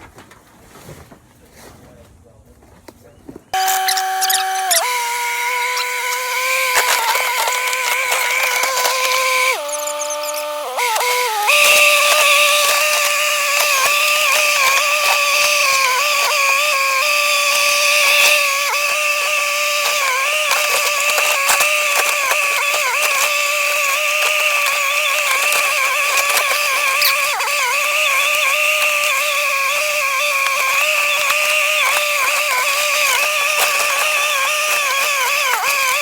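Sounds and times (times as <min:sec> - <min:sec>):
wood cracking and rattling: 0:11.0 - 0:36.0.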